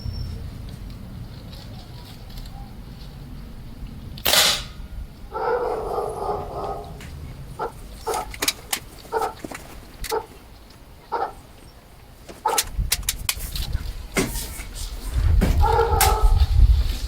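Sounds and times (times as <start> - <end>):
dog barking: 2.4 - 2.8, 5.3 - 10.4, 11.1 - 11.5, 12.4 - 12.7, 15.6 - 16.6
air rifle shot: 4.2 - 4.9.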